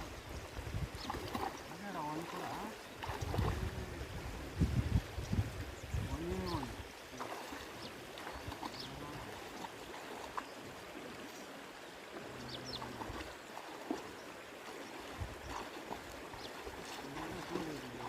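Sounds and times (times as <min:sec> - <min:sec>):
flowing river water: 0:00.0 - 0:18.0
faint distant voice: 0:06.1 - 0:07.5, 0:08.7 - 0:09.5, 0:12.2 - 0:13.3, 0:17.0 - 0:18.0.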